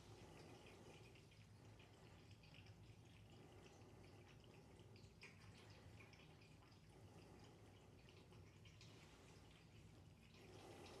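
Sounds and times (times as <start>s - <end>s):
faint low hum: 0.0s - 11.0s
water trickling and dripping: 0.0s - 11.0s.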